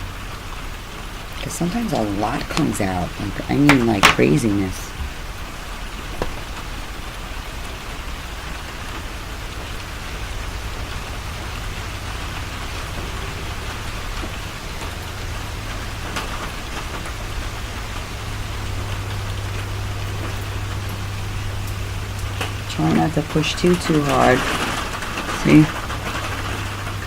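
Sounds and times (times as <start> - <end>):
low steady hum: 0.0 - 27.0
steady rain hiss: 0.0 - 27.0
drip-like taps: 6.2 - 6.5.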